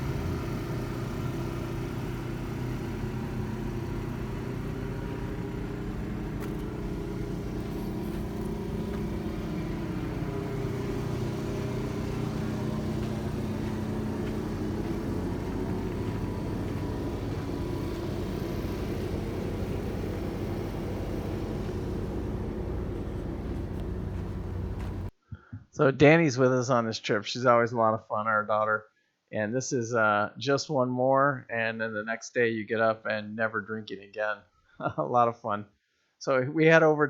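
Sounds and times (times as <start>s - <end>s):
engine running: 0.0s - 25.1s.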